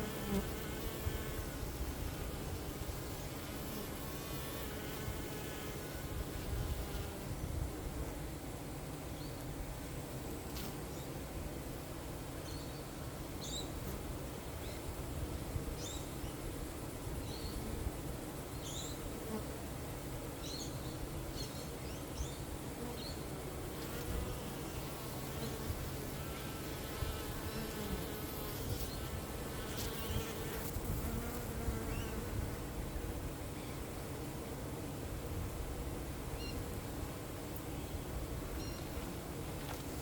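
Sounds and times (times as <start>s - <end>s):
honeybees buzzing: 0.0s - 7.1s, 23.7s - 32.8s.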